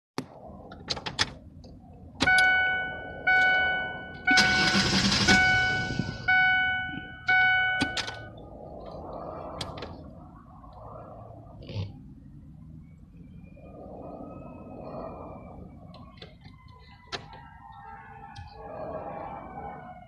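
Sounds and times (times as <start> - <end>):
vehicle warning chime dinging: 2.2 - 8.4.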